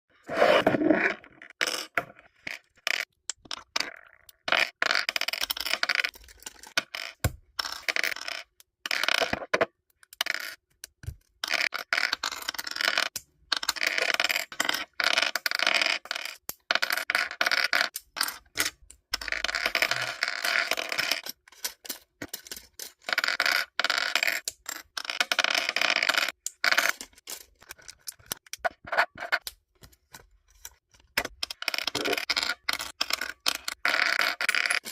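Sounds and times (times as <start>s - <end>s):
plastic bricks clicking and scraping: 0.4s - 34.9s.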